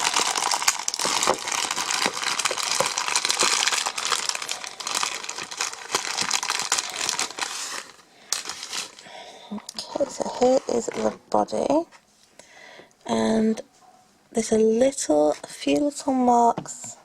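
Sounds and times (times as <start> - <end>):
plastic packaging crinkling: 0.0 - 11.2.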